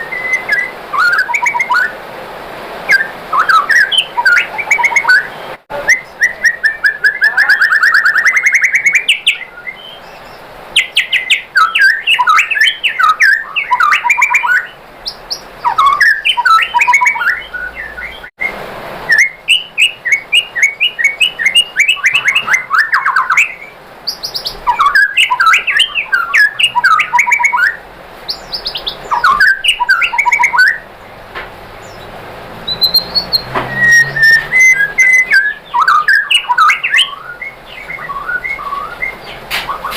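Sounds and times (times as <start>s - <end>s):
songbird whistling and trilling: 0.0s - 2.0s, 2.9s - 30.9s, 31.8s - 39.9s.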